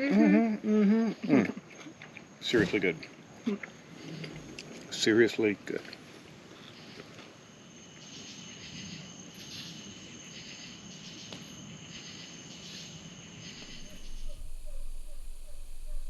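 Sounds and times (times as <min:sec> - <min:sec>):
insects trilling and chirping: 0:00.1 - 0:16.0
faint low murmur: 0:13.6 - 0:16.0
low rumble: 0:13.6 - 0:16.0.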